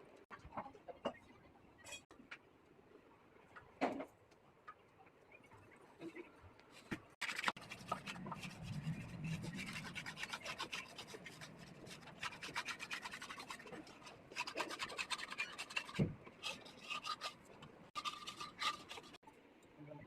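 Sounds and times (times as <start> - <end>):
scraping and rubbing in a vessel: 6.0 - 19.2.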